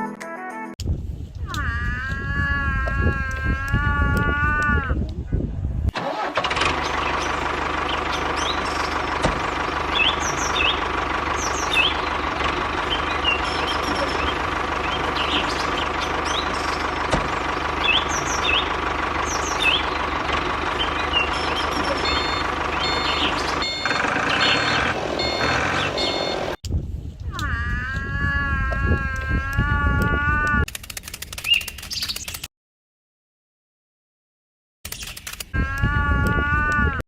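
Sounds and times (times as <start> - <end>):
short high beeps: 21.3 - 26.5.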